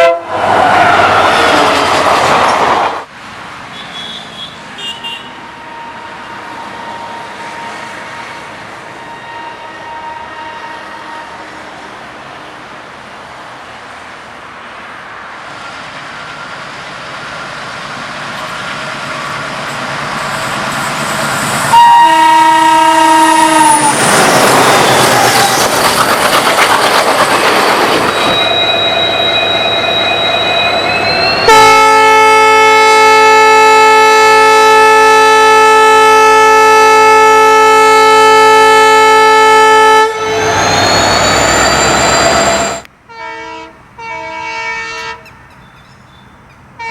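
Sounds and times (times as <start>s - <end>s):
train horn: 0.0s - 0.6s, 3.8s - 11.9s, 21.7s - 25.6s, 29.9s - 41.0s, 42.4s - 45.4s
locomotive rumble: 15.6s - 34.0s, 39.0s - 42.9s
steady high tones: 23.6s - 31.6s, 40.2s - 42.9s
wheels clattering over rail joints: 24.0s - 28.7s.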